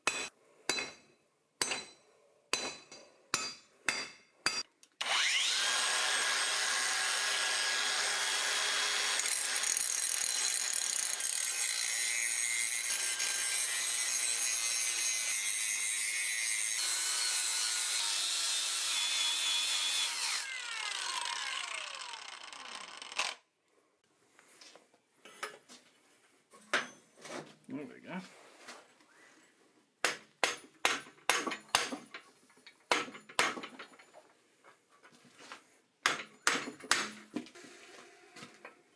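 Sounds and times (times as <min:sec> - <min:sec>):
angle grinder grinding metal: 0:05.0 - 0:23.4.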